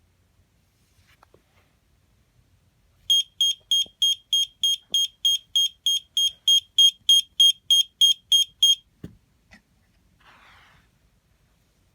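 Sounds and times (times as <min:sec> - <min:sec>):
smoke alarm beeping: 0:03.1 - 0:08.8.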